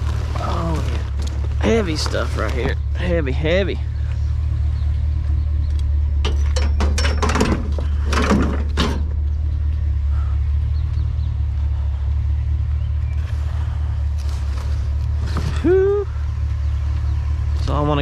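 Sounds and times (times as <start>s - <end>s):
vehicle engine idling: 0.0s - 18.0s
scrap metal clanking: 6.2s - 9.2s.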